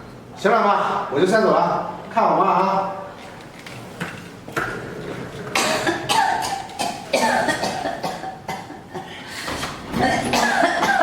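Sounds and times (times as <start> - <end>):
elderly woman coughing hard: 5.6 - 9.1, 10.0 - 11.0.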